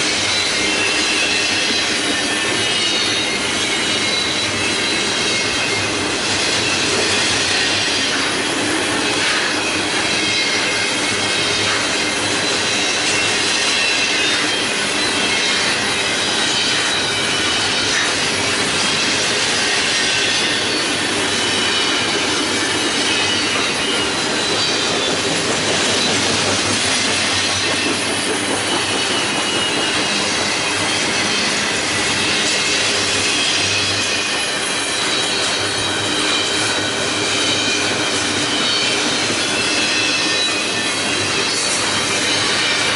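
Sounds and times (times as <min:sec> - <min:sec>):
freight train rolling past: 0:00.0 - 0:42.9
wheel squeal: 0:00.0 - 0:42.9.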